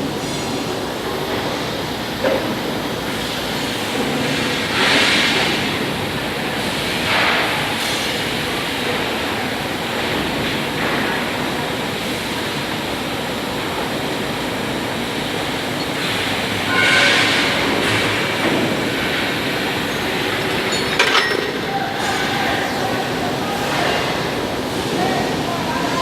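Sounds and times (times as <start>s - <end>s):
overhead crane rumble and hiss: 0.0s - 26.0s.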